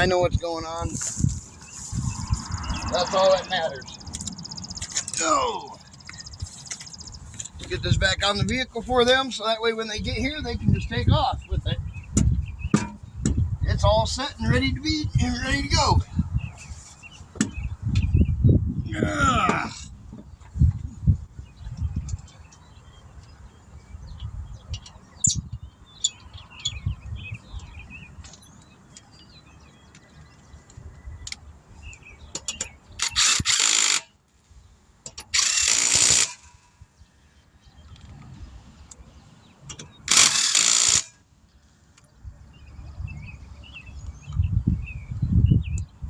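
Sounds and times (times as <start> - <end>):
impact wrench on lug nuts: 32.6 - 34.1, 35.1 - 36.6, 39.7 - 41.2.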